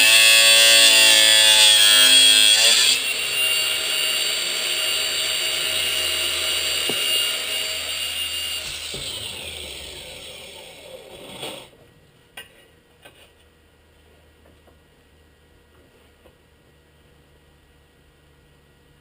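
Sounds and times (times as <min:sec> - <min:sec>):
power tool whine spinning down: 0:00.0 - 0:11.7.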